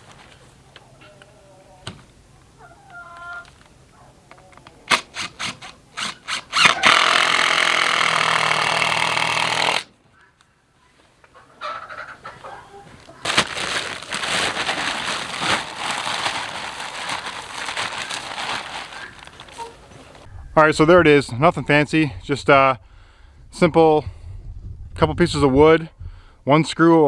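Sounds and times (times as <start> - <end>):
rustling and crackling: 0.0 - 1.2, 10.9 - 20.3
cordless drill driving screw: 4.9 - 9.9.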